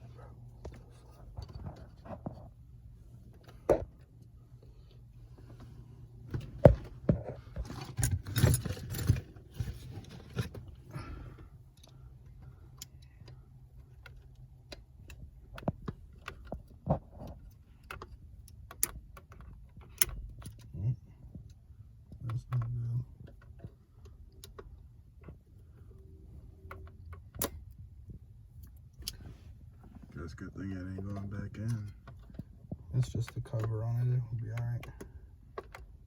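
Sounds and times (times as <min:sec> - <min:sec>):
jangling rattle: 0:07.4 - 0:10.5
plastic and metal clicks and knocks: 0:12.8 - 0:25.4.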